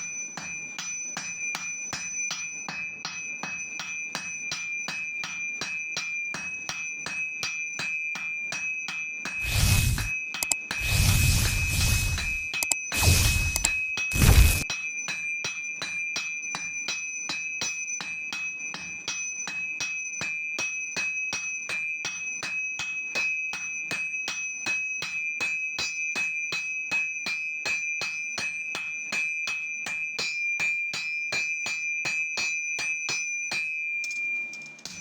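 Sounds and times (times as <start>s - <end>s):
high metallic ring: 9.3s - 15.2s.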